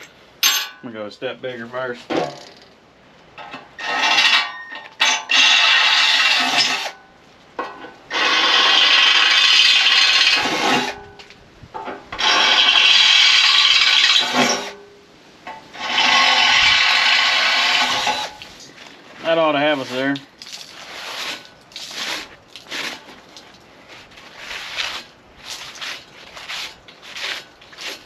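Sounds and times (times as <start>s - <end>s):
power drill boring through steel: 3.8s - 7.0s, 8.1s - 11.0s, 12.2s - 14.8s, 15.7s - 18.4s.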